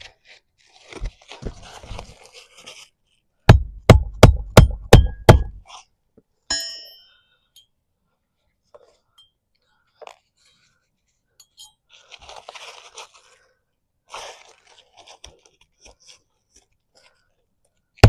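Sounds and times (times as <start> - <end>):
hammer driving nail into shingles: 3.5 - 5.6
ringing metallic clink: 6.5 - 7.7.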